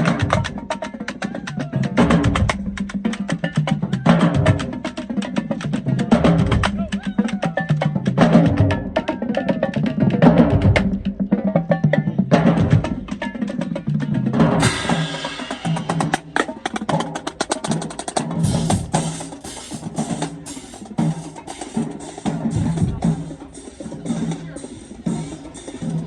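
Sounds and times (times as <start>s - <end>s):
cymbal crash: 14.6s - 16.2s
snare drum strokes: 14.6s - 26.0s.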